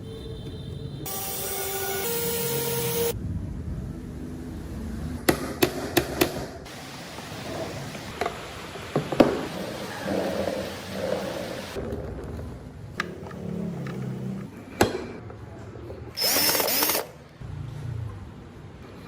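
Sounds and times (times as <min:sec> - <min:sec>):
whining power tool: 0:01.1 - 0:03.1, 0:16.2 - 0:17.0.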